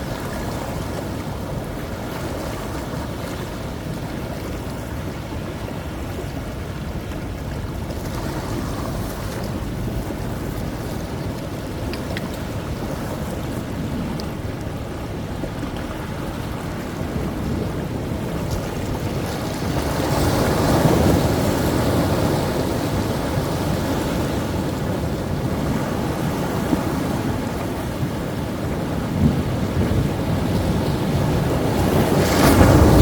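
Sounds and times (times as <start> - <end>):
waves crashing: 0.0 - 33.0
wind on microphone: 0.0 - 33.0.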